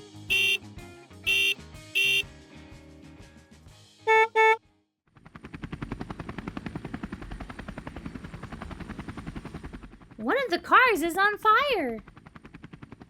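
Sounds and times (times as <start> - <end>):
car horn honks: 0.3 - 0.6, 1.3 - 2.3, 4.1 - 4.6
helicopter rotor chopping: 5.2 - 13.0.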